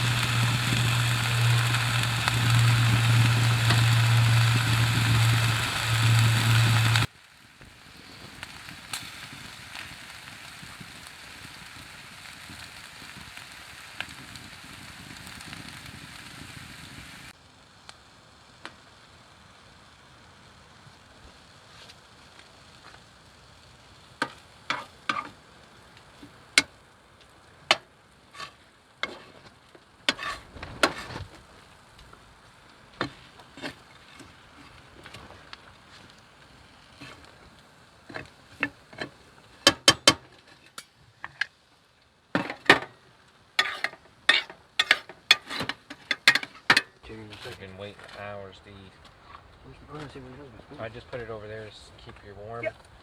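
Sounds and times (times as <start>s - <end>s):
metal utensil scraping frying pan: 0.0s - 7.1s, 24.2s - 25.4s, 28.3s - 29.5s, 30.1s - 31.3s, 43.6s - 47.6s
food sizzling: 0.0s - 48.6s.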